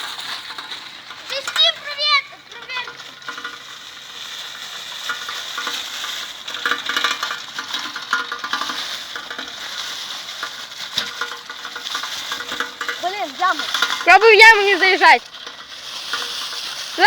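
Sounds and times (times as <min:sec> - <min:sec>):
bike tyres crackling on leaves: 0:00.0 - 0:17.0.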